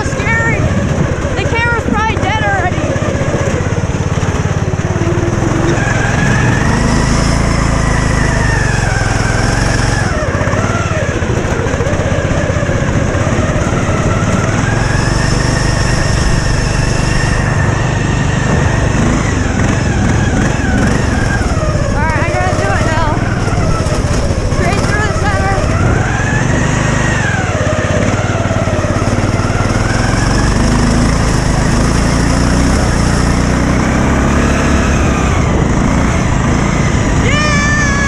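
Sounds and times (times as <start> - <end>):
lawn mower engine revving: 0.0 - 38.0.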